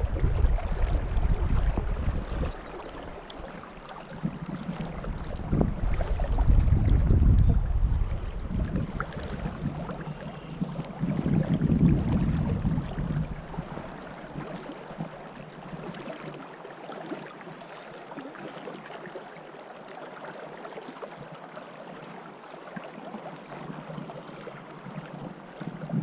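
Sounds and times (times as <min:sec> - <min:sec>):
wind buffeting microphone: 0:00.0 - 0:03.2, 0:04.2 - 0:14.5, 0:25.6 - 0:26.0
river water rushing: 0:12.0 - 0:25.8.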